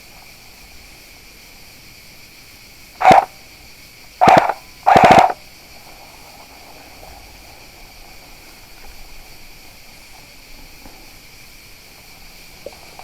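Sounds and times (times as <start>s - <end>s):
airsoft rifle bursts: 3.0s - 3.3s, 4.2s - 5.4s.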